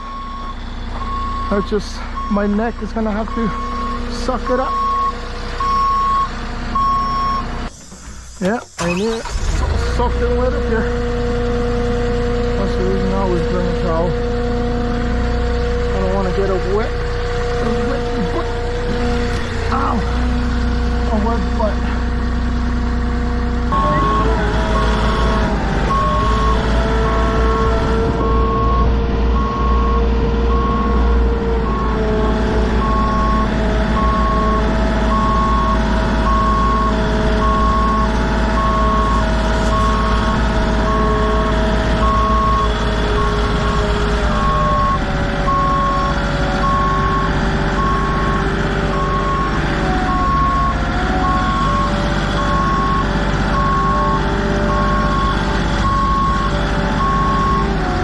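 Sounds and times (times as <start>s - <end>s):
vehicle backup alarm beeping: 0.0s - 9.6s, 23.7s - 58.0s
diesel engine running: 0.0s - 58.0s.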